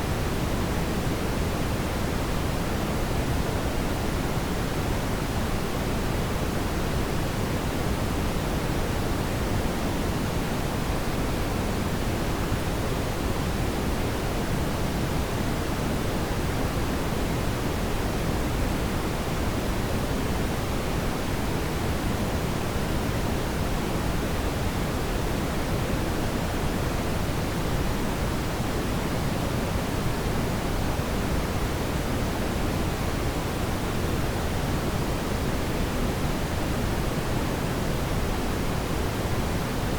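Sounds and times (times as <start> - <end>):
brown noise hiss: 0.0 - 39.9.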